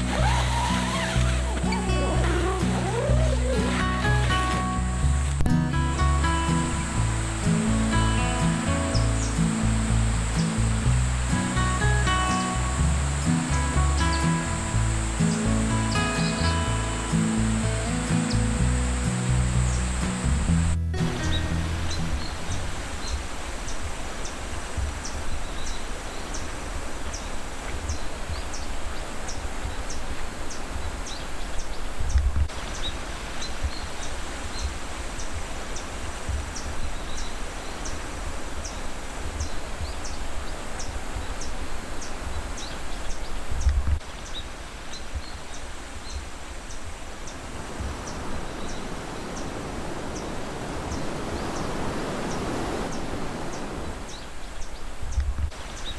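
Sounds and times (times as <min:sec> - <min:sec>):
outdoor noise wash: 0:00.0 - 0:55.9.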